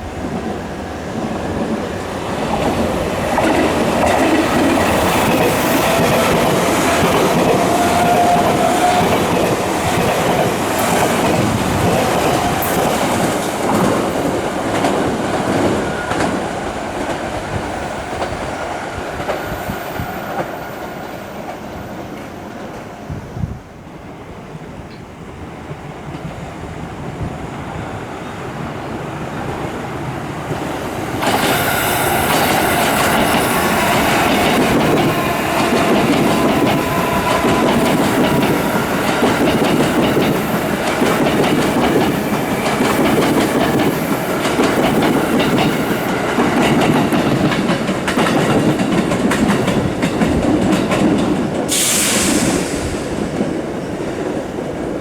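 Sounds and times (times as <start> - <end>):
train passing: 0.0 - 55.0
brief hiss: 51.7 - 53.3.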